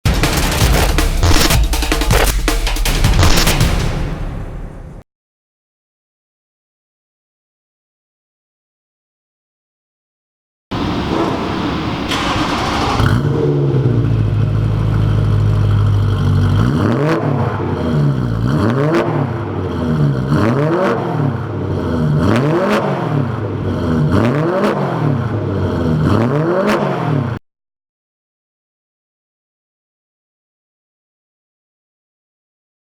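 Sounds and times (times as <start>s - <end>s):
car engine idling and revving: 0.1s - 2.6s, 10.7s - 27.4s.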